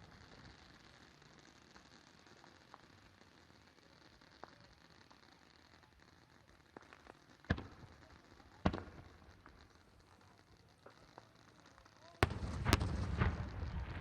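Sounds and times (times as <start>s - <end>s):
faint firework pops: 0.0s - 14.0s
distant firework booms: 12.2s - 14.0s.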